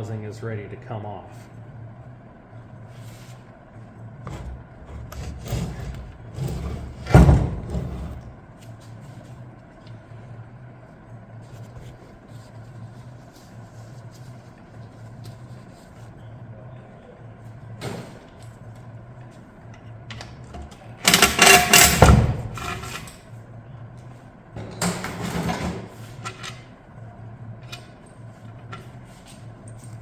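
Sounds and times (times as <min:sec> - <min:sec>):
steady low hum: 0:00.0 - 0:30.0
metal knocks and scraping: 0:04.2 - 0:08.4, 0:20.1 - 0:23.2.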